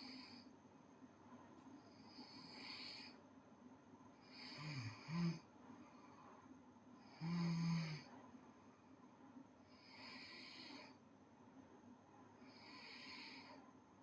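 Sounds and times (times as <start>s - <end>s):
girl snoring: 4.2s - 5.4s, 7.1s - 8.1s.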